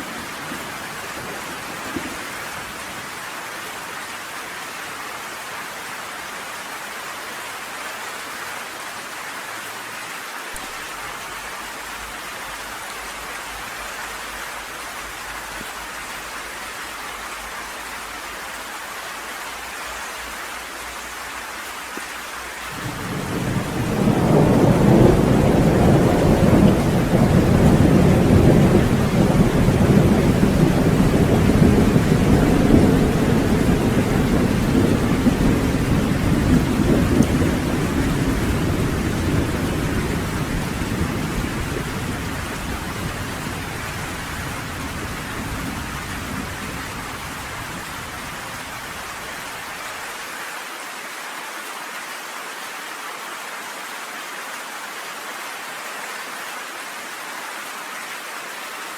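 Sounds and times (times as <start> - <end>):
steady rain falling: 0.0 - 58.9
rolling thunder: 22.7 - 49.7.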